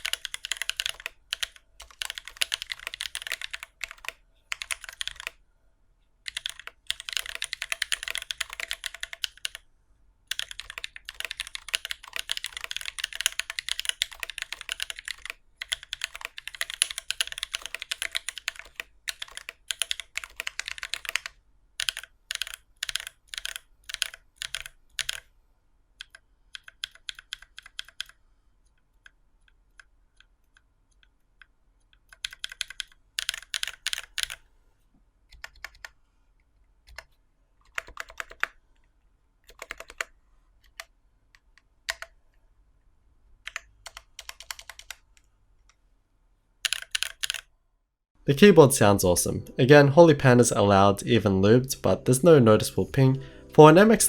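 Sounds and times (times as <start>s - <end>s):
mechanical keyboard typing: 0.0s - 5.4s, 6.3s - 9.6s, 10.3s - 25.3s, 26.0s - 28.2s, 32.0s - 34.4s, 35.3s - 36.0s, 36.9s - 38.6s, 39.4s - 40.1s, 40.7s - 42.2s, 43.4s - 45.1s, 46.6s - 47.5s.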